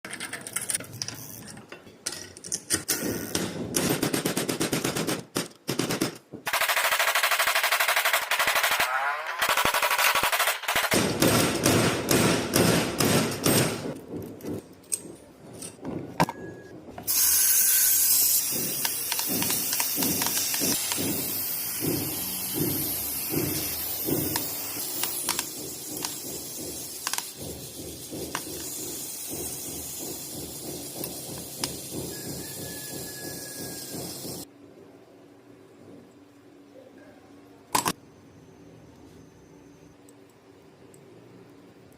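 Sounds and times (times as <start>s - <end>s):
bicycle freehub clicking: 0.1s - 1.6s.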